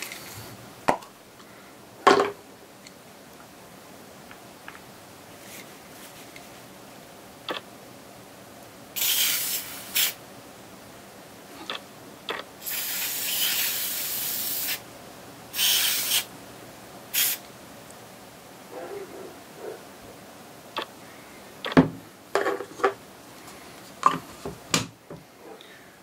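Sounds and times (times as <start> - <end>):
aerosol spray hissing: 9.0 - 10.2, 12.6 - 14.8, 15.5 - 16.3, 17.1 - 17.4.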